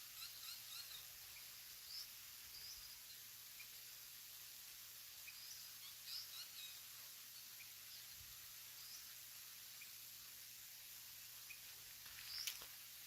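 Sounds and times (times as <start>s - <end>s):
bird chirps: 0.0s - 3.8s, 5.2s - 8.1s, 11.4s - 12.7s.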